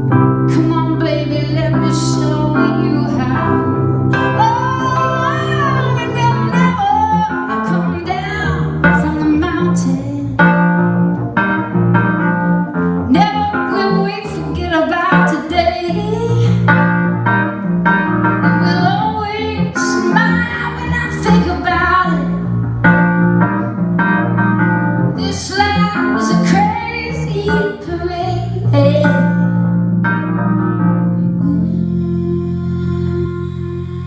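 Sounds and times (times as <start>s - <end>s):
woman singing: 0.5s - 10.6s, 13.1s - 16.9s, 18.4s - 22.5s, 25.2s - 29.6s, 31.4s - 34.0s.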